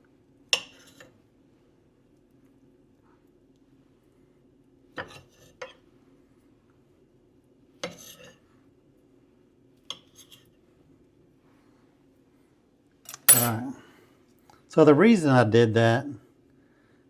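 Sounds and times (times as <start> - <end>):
faint steady hum: 11.1 - 17.0
knife clinking against a dish: 13.1 - 13.7.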